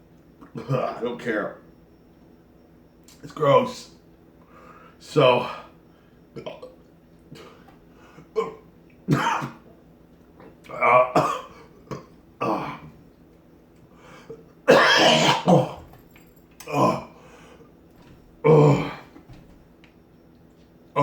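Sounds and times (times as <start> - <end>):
man coughing and clearing throat: 8.3 - 9.6, 11.0 - 12.8, 14.7 - 15.9.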